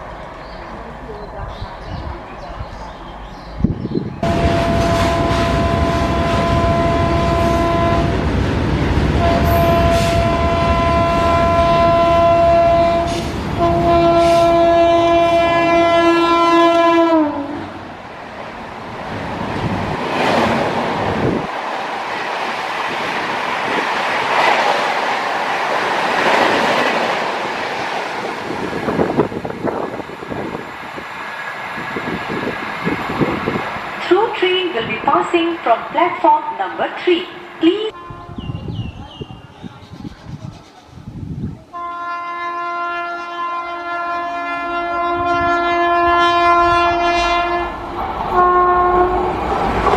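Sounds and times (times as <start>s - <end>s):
train wheels on rails: 0.0s - 16.9s, 17.7s - 36.2s
locomotive horn blasts: 4.2s - 8.2s, 9.2s - 17.7s, 37.8s - 38.8s, 41.7s - 47.8s, 48.4s - 49.3s.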